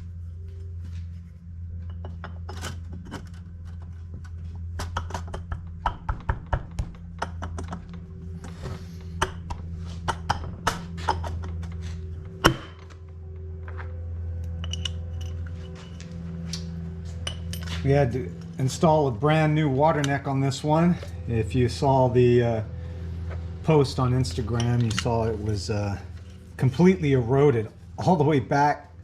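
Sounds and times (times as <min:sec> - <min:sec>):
steady low hum: 0:00.0 - 0:29.0
metal hand tools clinking: 0:24.4 - 0:25.4.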